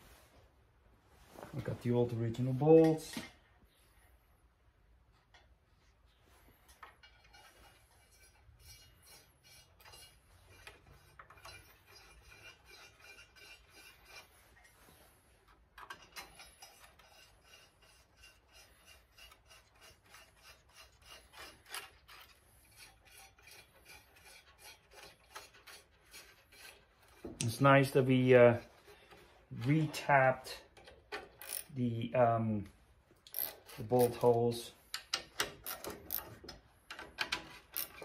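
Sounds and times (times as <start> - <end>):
metal rubbing on metal: 6.3 - 31.8
bolts scraping and clicking: 6.5 - 31.8, 33.1 - 38.0.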